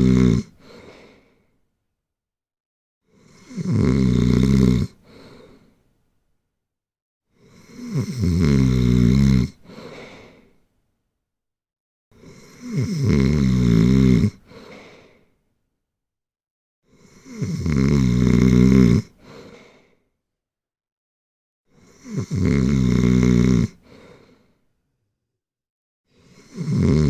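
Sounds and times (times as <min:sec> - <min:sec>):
rasping snores: 0:00.0 - 0:00.9, 0:03.1 - 0:05.1, 0:07.4 - 0:09.7, 0:12.2 - 0:14.6, 0:16.9 - 0:19.5, 0:21.7 - 0:24.4, 0:26.1 - 0:27.0.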